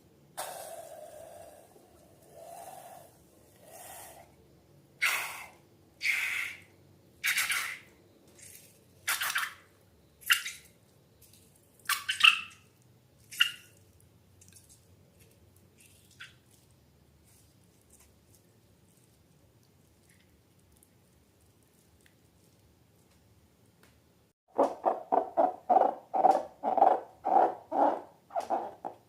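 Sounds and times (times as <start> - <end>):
wet slime squelching: 10.2 - 23.7.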